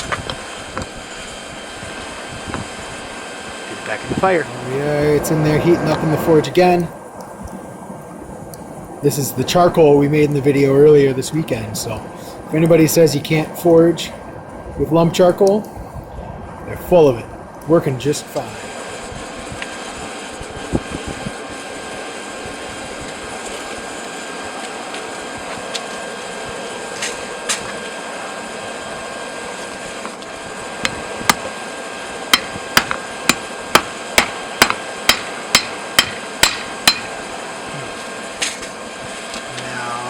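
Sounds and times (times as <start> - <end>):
steady background noise: 0.0 - 40.0
hammer ringing on anvil: 32.4 - 37.2.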